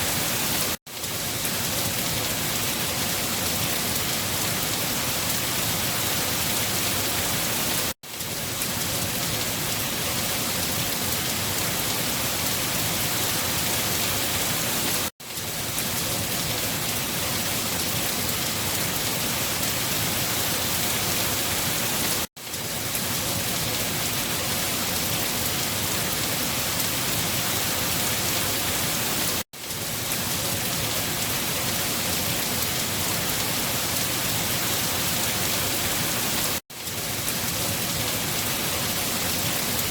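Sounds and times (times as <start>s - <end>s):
heavy rain hissing: 31.0s - 36.6s.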